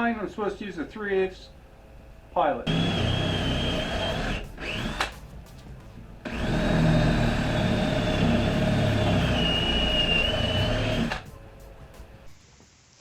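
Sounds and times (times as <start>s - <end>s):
electric drill whining: 2.7s - 5.1s, 6.2s - 11.3s.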